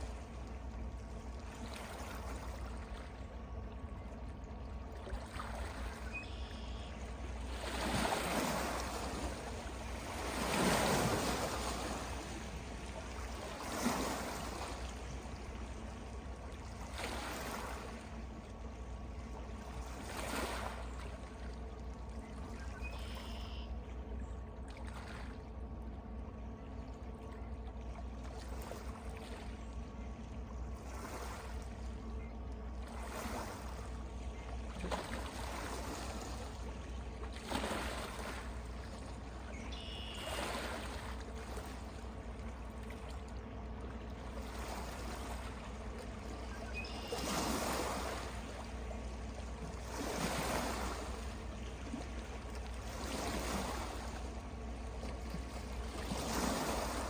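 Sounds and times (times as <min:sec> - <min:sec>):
small waves lapping: 0:00.0 - 0:57.0
faint short bird calls: 0:05.8 - 0:07.1, 0:22.6 - 0:23.8, 0:39.5 - 0:40.5, 0:46.4 - 0:47.4.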